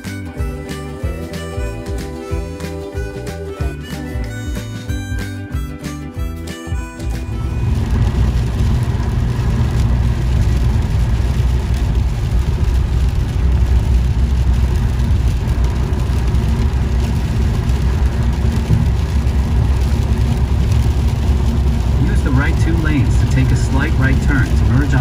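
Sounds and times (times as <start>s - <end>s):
car cabin road and engine rumble: 0.0s - 25.0s.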